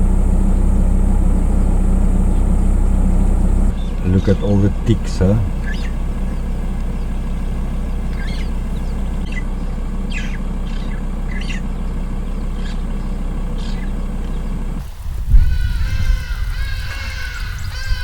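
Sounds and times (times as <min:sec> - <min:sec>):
vehicle engine humming: 0:00.0 - 0:18.0
bird chirping: 0:03.7 - 0:18.0.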